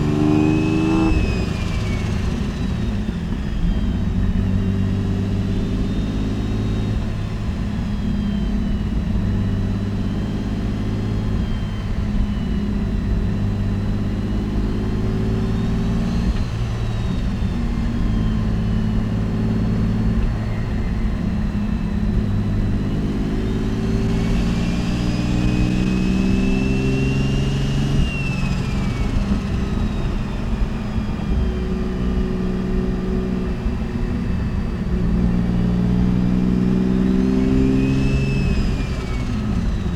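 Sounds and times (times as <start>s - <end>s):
car engine revving: 0.0s - 39.9s
high turbo whistle: 14.2s - 35.3s, 36.1s - 39.9s.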